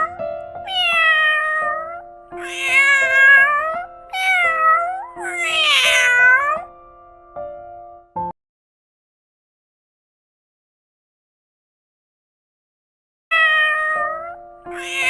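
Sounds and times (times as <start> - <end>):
cat meowing: 0.0 - 6.7, 13.3 - 15.0
soft background music: 0.0 - 8.3, 13.4 - 15.0.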